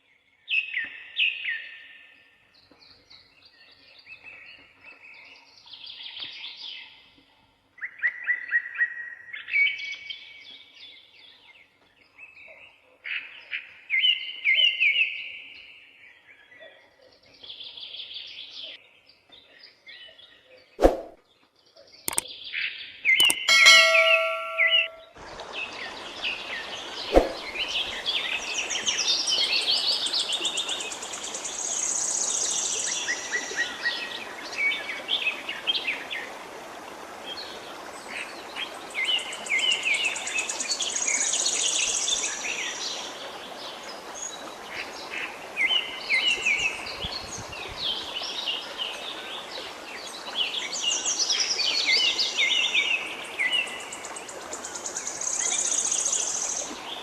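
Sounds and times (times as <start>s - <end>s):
sharp click: 22.1s - 22.3s, 23.2s - 24.9s
birds chirping and trilling: 23.2s - 25.0s.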